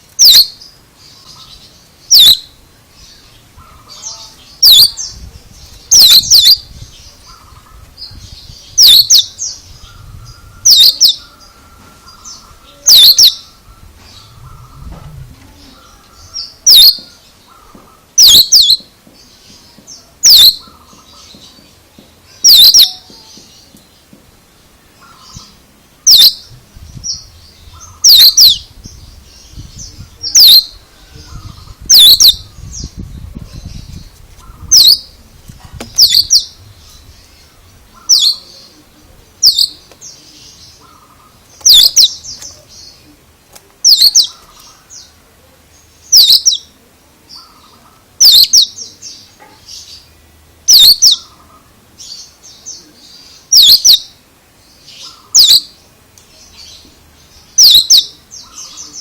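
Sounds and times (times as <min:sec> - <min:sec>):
soft bird chirps: 0:00.1 - 0:24.1, 0:35.8 - 0:38.8, 0:43.8 - 0:59.0
bird loud sharp high call: 0:10.0 - 0:14.9, 0:22.4 - 0:23.3.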